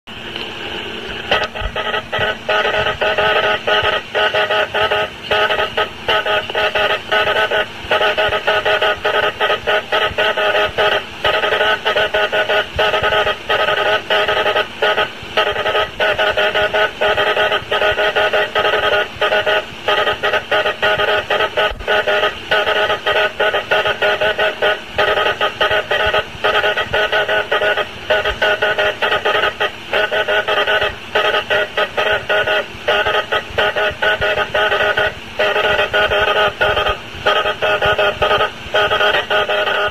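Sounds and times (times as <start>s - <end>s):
morse code buzzy tone: 1.1s - 39.9s.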